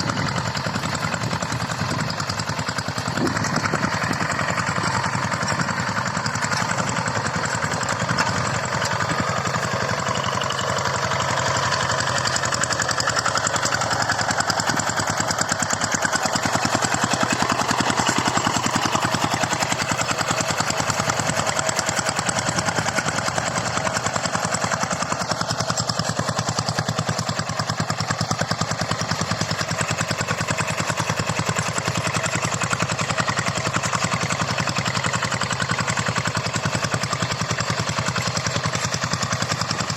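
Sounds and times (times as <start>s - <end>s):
hand tractor engine running: 0.0s - 39.9s.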